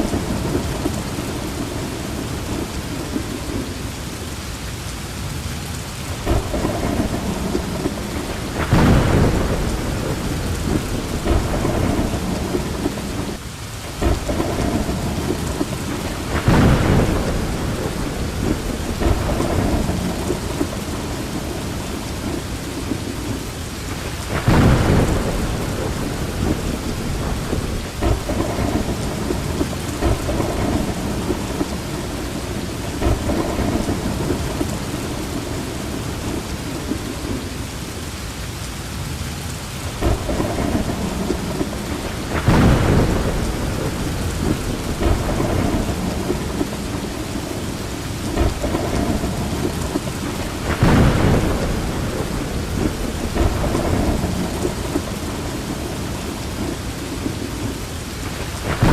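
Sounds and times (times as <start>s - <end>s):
thunder rumbles: 0.0s - 38.0s, 39.0s - 58.9s
steady rain hiss: 0.0s - 58.9s.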